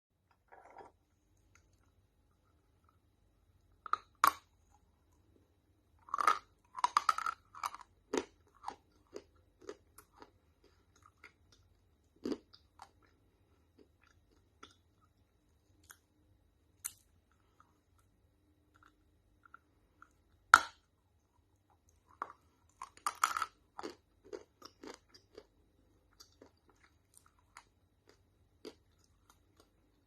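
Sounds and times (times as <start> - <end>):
crunchy clay being chewed: 6.0 - 16.1, 21.4 - 30.0.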